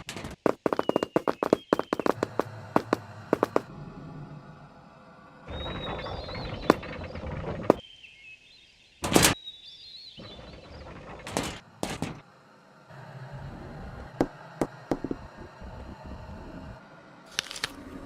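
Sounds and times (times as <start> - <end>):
birds chirping: 0.4 - 3.7, 5.1 - 11.8.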